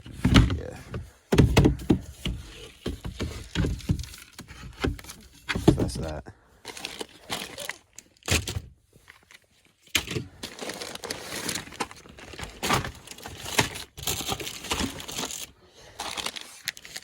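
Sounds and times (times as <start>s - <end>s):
plastic wrapping crinkling: 6.6s - 8.3s, 9.0s - 17.0s.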